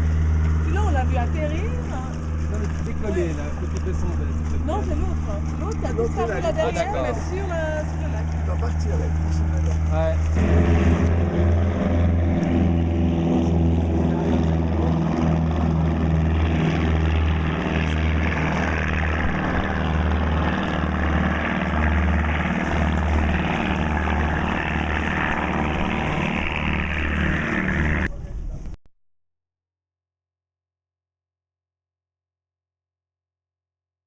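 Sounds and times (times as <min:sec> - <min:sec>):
propeller airplane engine throbbing: 0:00.0 - 0:28.8.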